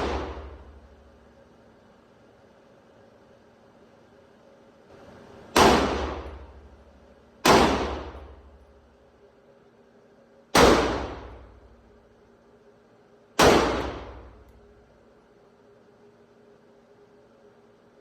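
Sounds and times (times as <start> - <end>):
gunshots with trailing echo: 0.0 - 0.7, 5.6 - 6.6, 7.4 - 8.4, 10.6 - 11.5, 13.4 - 14.3.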